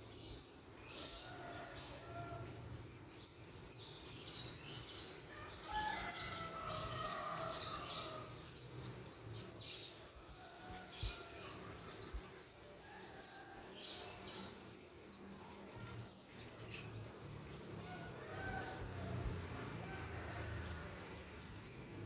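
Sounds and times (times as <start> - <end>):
birds chirping and calling: 3.8 - 10.0.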